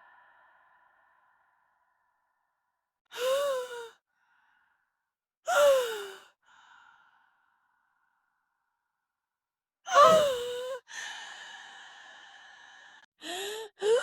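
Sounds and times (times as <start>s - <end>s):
woman sighing: 9.9s - 10.6s.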